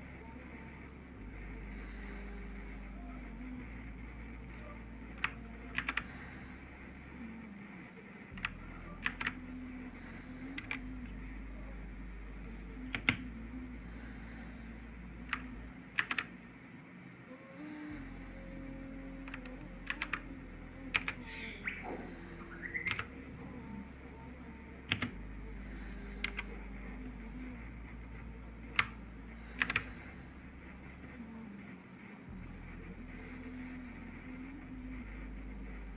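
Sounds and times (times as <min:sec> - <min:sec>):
steady low hum: 0:00.0 - 0:35.9
mechanical keyboard key clicks: 0:05.2 - 0:06.0, 0:16.0 - 0:16.3, 0:22.9 - 0:23.1.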